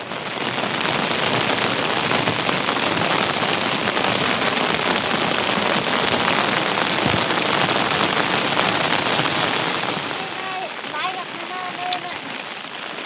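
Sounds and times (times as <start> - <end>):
heavy rain pattering: 0.0 - 13.0.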